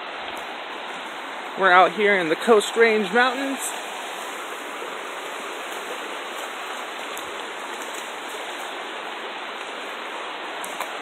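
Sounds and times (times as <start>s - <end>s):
fast-flowing stream rushing: 0.0s - 11.0s.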